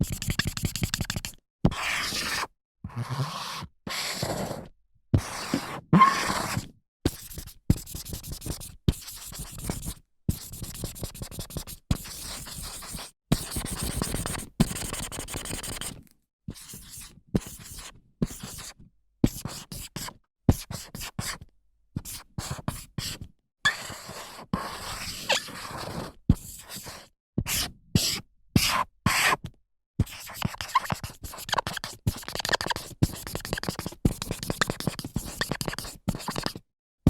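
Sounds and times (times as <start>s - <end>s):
marker writing on whiteboard: 0.0s - 2.5s, 3.3s - 4.6s, 5.2s - 21.4s, 22.1s - 23.2s, 23.9s - 29.4s, 30.0s - 36.6s
marker squeak: 5.9s - 6.6s, 25.2s - 25.7s, 30.3s - 33.6s.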